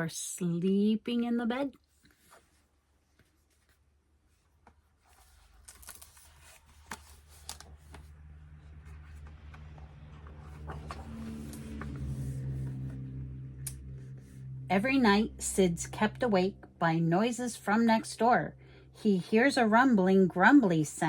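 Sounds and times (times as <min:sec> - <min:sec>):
low steady hum: 0:00.0 - 0:21.0
pages turning with soft clicks: 0:02.0 - 0:13.1
paper rustling: 0:04.4 - 0:13.0.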